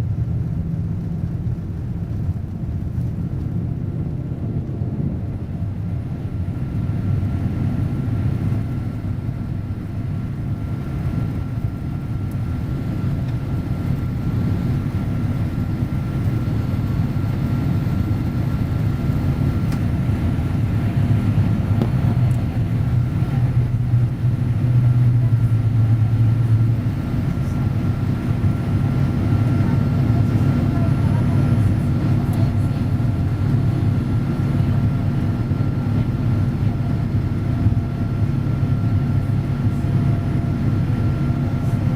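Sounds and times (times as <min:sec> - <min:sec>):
jet engine rumble in cabin: 0:00.0 - 0:41.9.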